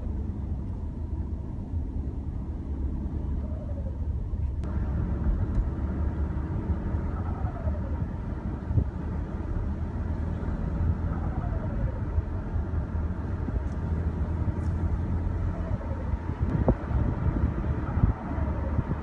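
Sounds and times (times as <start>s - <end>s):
turbocharged car engine rumble: 0.0s - 19.0s.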